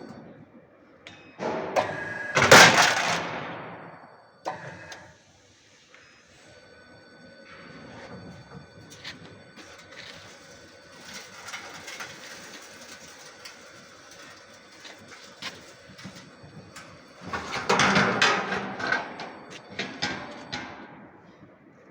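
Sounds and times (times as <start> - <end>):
machine clattering: 8.8 - 20.9.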